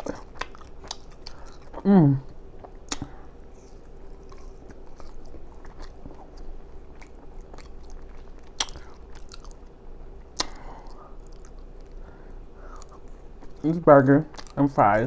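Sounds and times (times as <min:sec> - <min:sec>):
chewing with wet lip smacks: 0:00.0 - 0:12.1, 0:12.7 - 0:14.7
small mouth clicks: 0:02.8 - 0:03.2, 0:08.6 - 0:09.4, 0:10.4 - 0:11.6.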